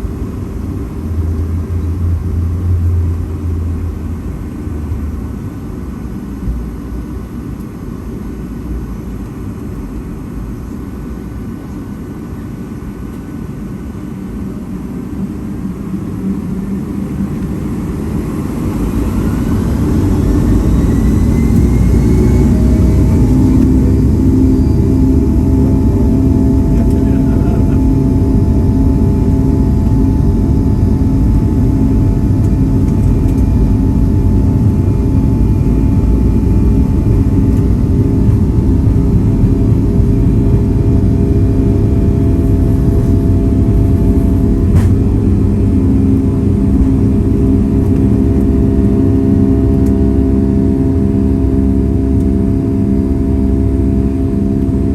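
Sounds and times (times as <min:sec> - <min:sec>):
jet engines heard from cabin: 0:00.0 - 0:54.9.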